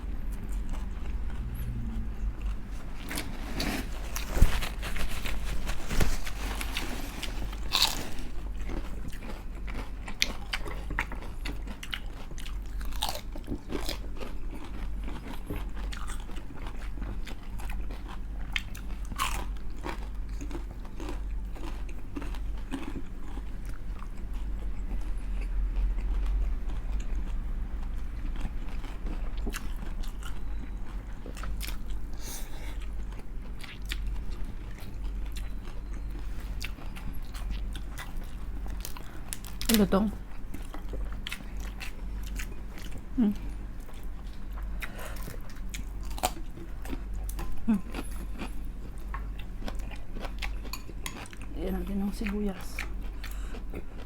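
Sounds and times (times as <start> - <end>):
steady low hum: 0.0 - 54.0
crunching of crispy chicken skin: 3.1 - 16.4.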